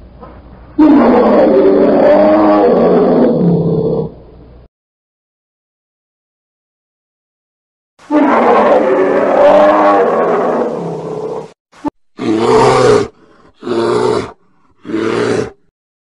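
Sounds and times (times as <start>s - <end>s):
bear roaring: 0.8s - 4.2s, 8.0s - 11.6s, 12.2s - 15.7s.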